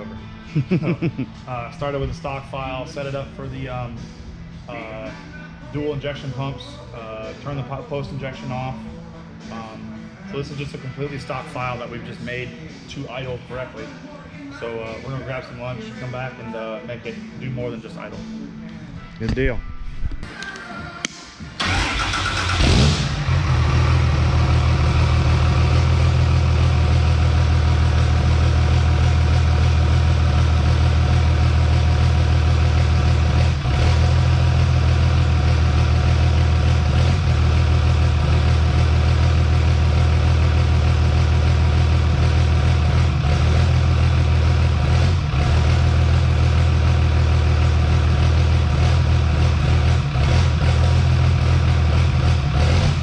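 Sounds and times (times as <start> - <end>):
diesel engine starting and idling: 21.6 - 53.0.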